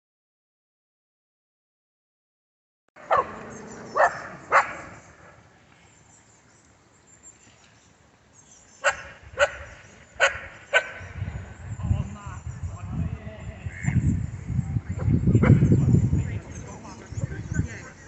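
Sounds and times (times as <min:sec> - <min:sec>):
dog barking: 0:03.0 - 0:05.4, 0:08.8 - 0:11.1.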